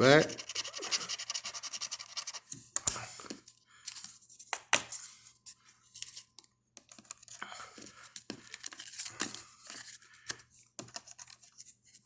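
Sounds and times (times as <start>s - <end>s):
coin scratching a lottery ticket: 0.0s - 2.5s.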